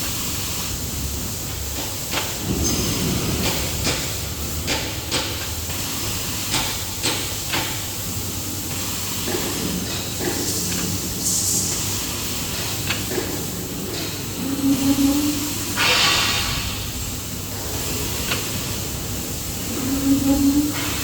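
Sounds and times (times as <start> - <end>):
cutting machine hissing: 12.4 - 21.0.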